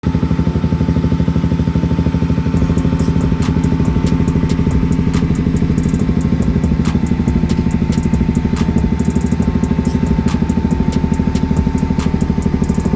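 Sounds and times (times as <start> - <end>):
motorcycle engine idling: 0.0 - 12.9
sharp ticks: 2.6 - 12.9.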